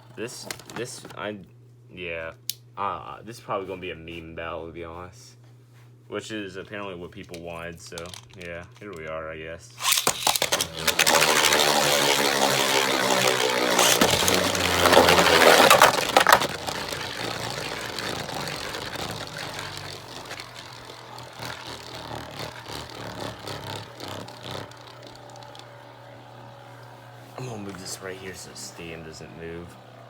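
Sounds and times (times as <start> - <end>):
spinning tops colliding: 9.8 - 25.8
spinning tops whirring: 9.8 - 30.0.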